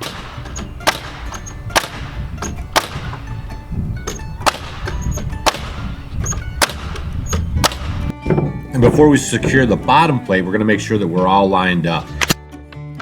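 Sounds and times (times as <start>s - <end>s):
nails driven into wood: 0.0s - 9.9s
background music: 0.0s - 13.0s.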